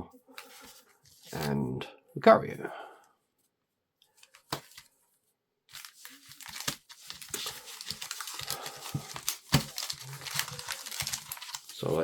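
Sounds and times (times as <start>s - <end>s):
foil wrappers crinkling: 5.7s - 12.0s.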